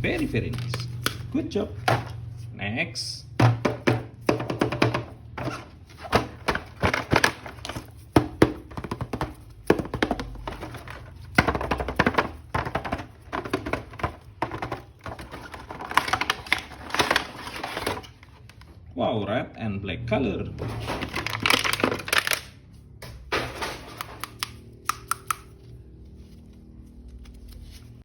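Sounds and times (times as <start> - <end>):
plastic toy clicks and taps: 24.2 - 25.5.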